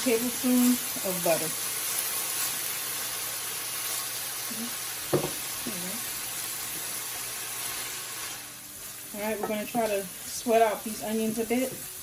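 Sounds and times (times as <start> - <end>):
onions sizzling in oil: 0.0 - 12.0
single knock: 5.1 - 5.4.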